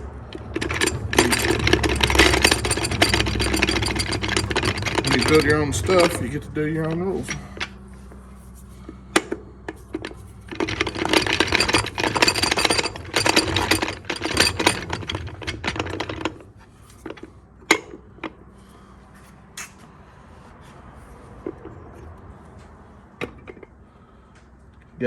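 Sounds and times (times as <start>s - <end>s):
clutch plates rattling and clicking: 0.0s - 8.3s, 9.1s - 18.5s, 23.2s - 23.8s.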